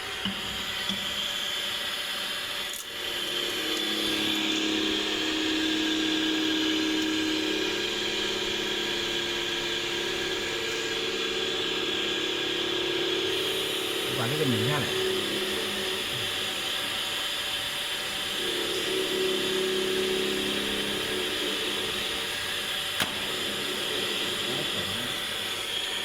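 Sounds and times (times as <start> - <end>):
mechanical running hum: 0.0 - 26.0
sharp click: 23.0 - 23.3.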